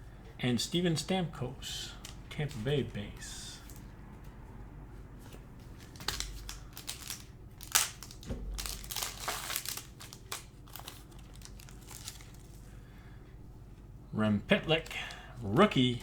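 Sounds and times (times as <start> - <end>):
plastic packaging crinkling: 1.9 - 3.0, 5.6 - 12.7.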